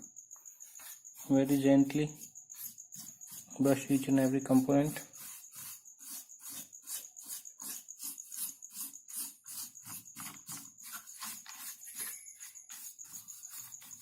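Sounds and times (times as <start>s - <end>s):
brush sweeping computer parts: 0.0s - 14.0s.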